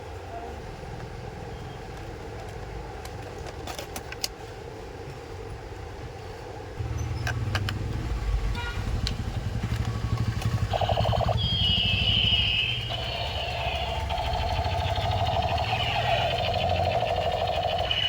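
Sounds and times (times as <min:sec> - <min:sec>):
electronic sound-effect tones: 0:10.6 - 0:18.0
toy gun buzzing rattle: 0:10.7 - 0:18.0.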